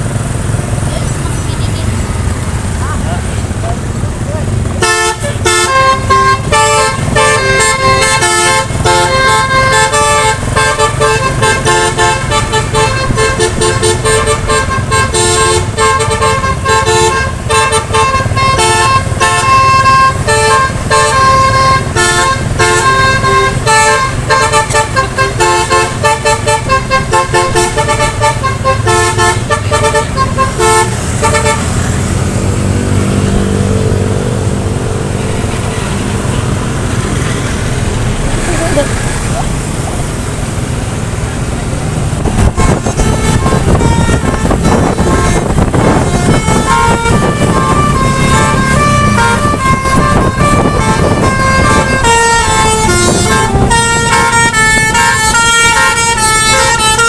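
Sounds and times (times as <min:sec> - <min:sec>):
bus engine rumble: 0:00.0 - 0:57.0
tuned air horns playing a tune: 0:04.7 - 0:32.0, 0:42.2 - 0:57.0.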